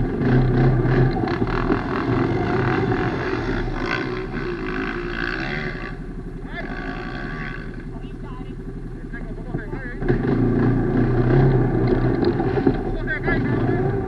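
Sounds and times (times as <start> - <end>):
atv engine revving: 0.0 - 14.0.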